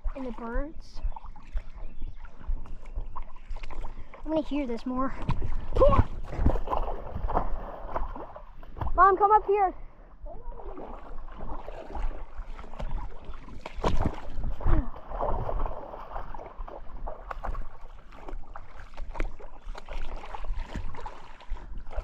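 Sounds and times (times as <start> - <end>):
wind rumbling on microphone: 0.0 - 4.4, 5.0 - 9.0, 10.1 - 22.0
water splashing in a creek: 0.0 - 22.0.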